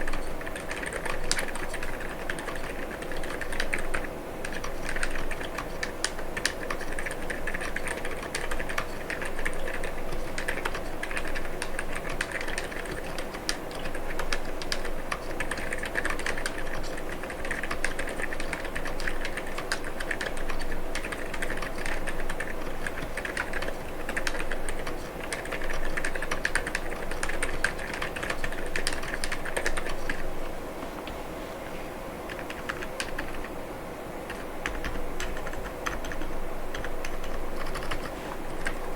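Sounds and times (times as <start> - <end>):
muted keyboard typing: 0.0 - 30.3, 32.3 - 33.5, 34.3 - 38.9.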